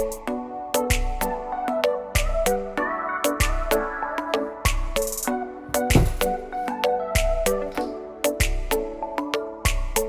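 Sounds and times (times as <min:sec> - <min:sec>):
kick drum and snare beat: 0:05.7 - 0:06.6.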